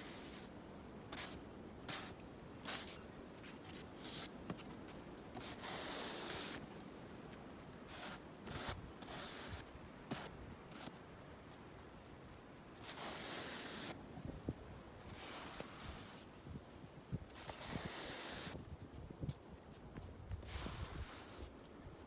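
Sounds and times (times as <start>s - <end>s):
snow crunching and scraping: 0.0s - 0.5s, 1.1s - 6.9s, 7.8s - 11.0s, 12.7s - 14.0s, 15.0s - 16.4s, 17.3s - 18.7s, 20.4s - 21.5s.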